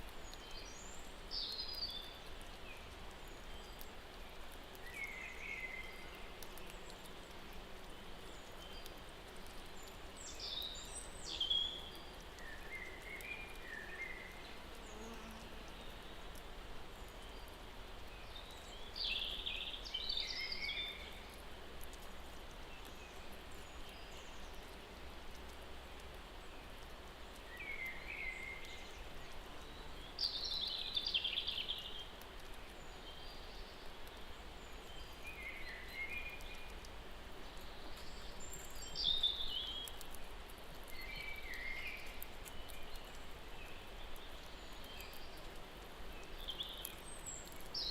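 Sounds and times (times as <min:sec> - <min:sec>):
small birds chirping: 0:00.0 - 0:47.9
steady outdoor hiss: 0:00.0 - 0:47.9.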